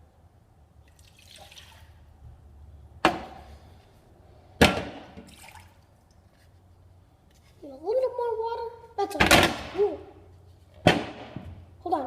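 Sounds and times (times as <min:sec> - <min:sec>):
water pouring into a bowl: 0:00.9 - 0:01.9.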